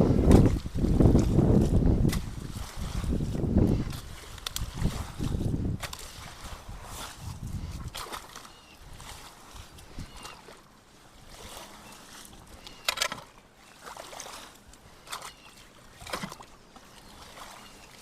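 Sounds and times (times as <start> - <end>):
water splashing and sloshing: 0.0 - 18.0.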